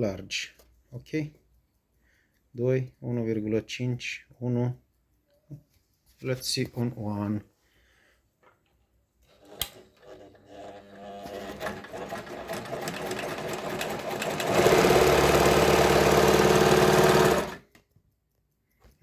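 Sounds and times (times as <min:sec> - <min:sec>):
sewing machine stitching: 0:09.2 - 0:17.7
sewing machine click: 0:09.2 - 0:17.9.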